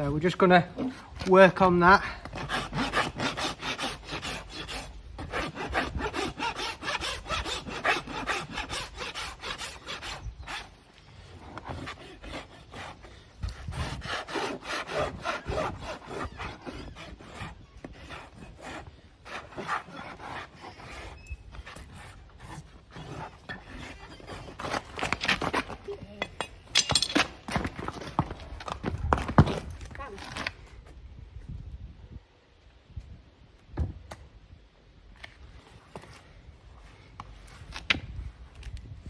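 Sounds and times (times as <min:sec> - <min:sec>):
rasp filing a hoof: 0:02.1 - 0:27.7.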